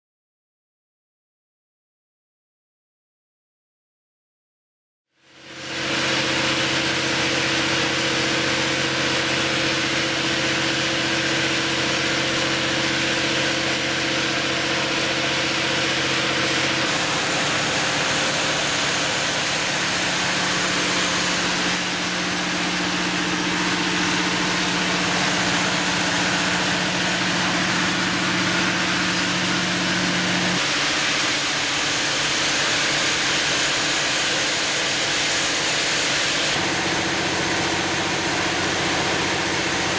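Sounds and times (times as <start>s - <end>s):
cooling fan air rush: 5.2s - 39.9s
diesel generator engine hum: 6.0s - 30.6s, 36.6s - 39.9s.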